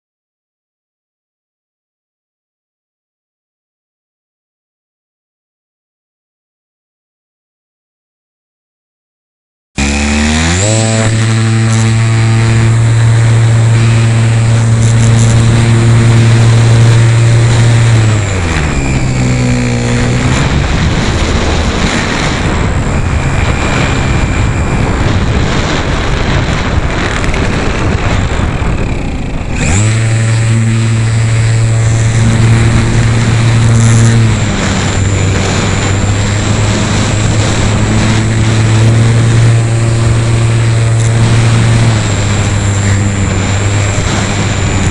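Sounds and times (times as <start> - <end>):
air rushing: 9.8 - 44.9
model airplane motor humming: 9.8 - 44.9.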